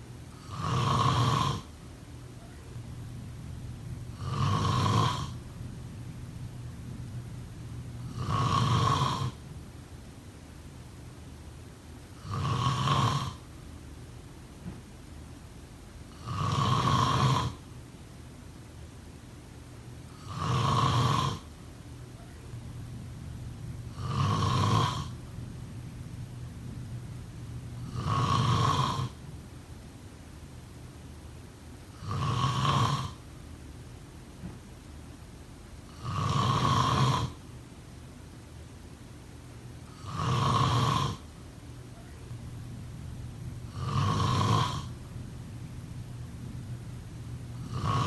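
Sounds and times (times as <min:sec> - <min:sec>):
person snoring: 0:00.4 - 0:01.7, 0:04.1 - 0:05.4, 0:08.0 - 0:09.4, 0:12.2 - 0:13.4, 0:16.1 - 0:17.6, 0:20.2 - 0:21.5, 0:23.9 - 0:25.2, 0:27.8 - 0:29.2, 0:32.0 - 0:33.2, 0:35.9 - 0:37.4, 0:39.9 - 0:41.2, 0:43.6 - 0:45.1, 0:47.4 - 0:48.0.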